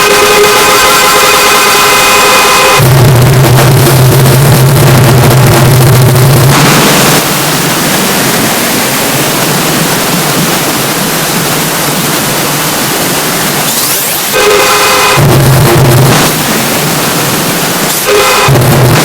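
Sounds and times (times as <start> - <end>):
static rushing noise: 0.0 - 19.0
distorted low buzzing tone: 2.4 - 10.5, 14.6 - 19.0.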